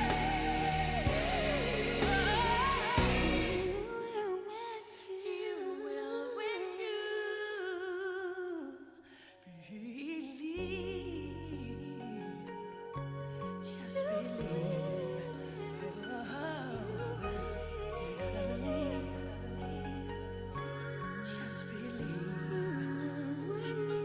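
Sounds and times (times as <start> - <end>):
bass and beat: 0.0 - 3.8
song with solo singer: 0.0 - 24.0.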